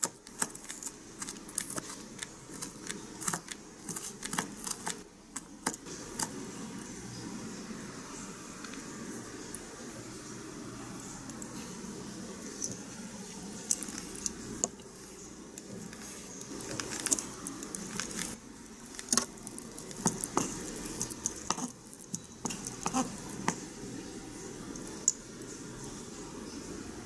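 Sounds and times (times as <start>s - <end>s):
small utensils and dishes clicking: 0.0s - 6.9s, 12.4s - 26.1s
faint steady hiss: 0.0s - 27.0s.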